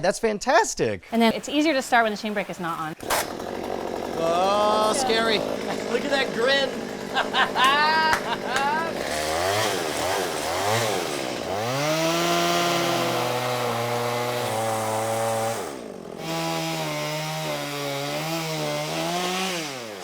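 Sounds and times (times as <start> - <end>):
chainsaw engine revving: 1.1 - 20.0.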